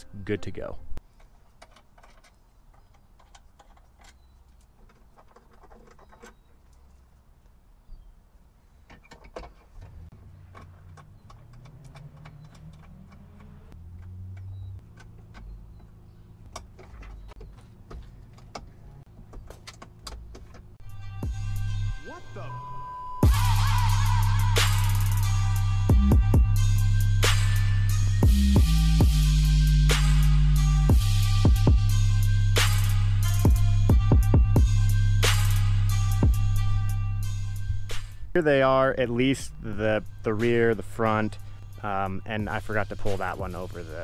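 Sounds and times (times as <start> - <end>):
hand tools clicking and clinking: 1.1 - 6.9, 8.9 - 20.8.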